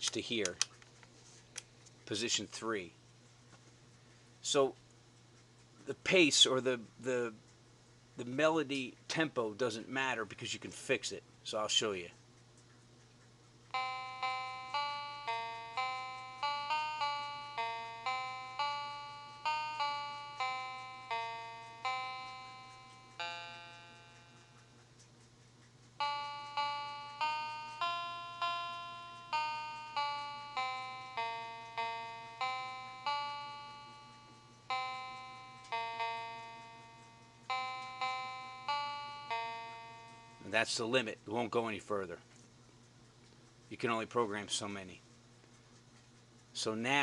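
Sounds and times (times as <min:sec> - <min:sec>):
electronic melody notes: 0:13.8 - 0:24.5, 0:26.0 - 0:40.6.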